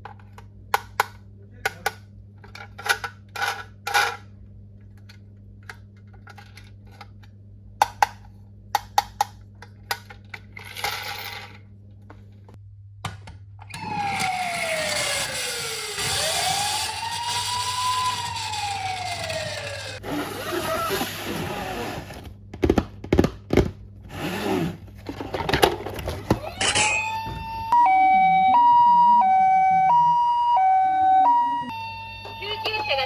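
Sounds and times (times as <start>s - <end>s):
siren wailing: 13.7s - 20.0s, 26.4s - 33.0s.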